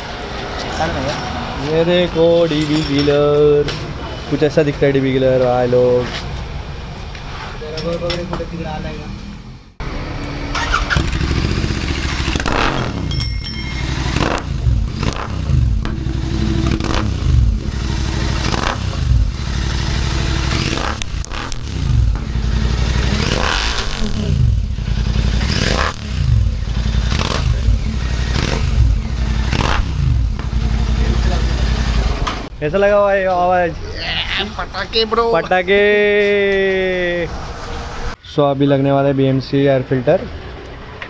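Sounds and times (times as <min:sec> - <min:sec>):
motorcycle engine revving: 0:00.0 - 0:32.6
exhaust crackles and pops: 0:09.2 - 0:32.6.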